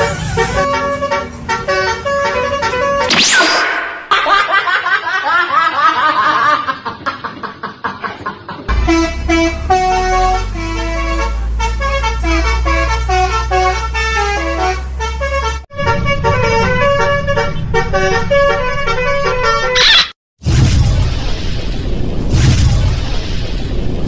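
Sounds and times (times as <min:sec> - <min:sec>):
bus horn playing a tune: 0:00.0 - 0:03.1, 0:08.7 - 0:19.8
low steady rumble: 0:08.7 - 0:15.2.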